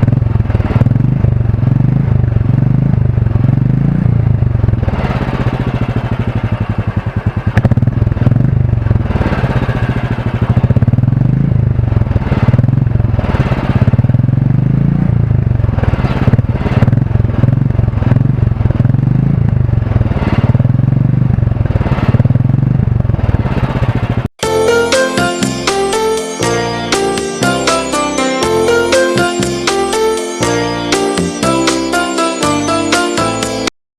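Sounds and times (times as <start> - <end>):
motorcycle engine thumping: 0.0 - 24.3.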